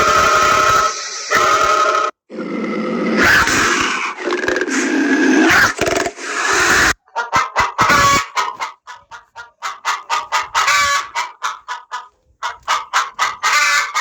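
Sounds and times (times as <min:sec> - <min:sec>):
chicken clucking ringtone: 0:06.8 - 0:14.0.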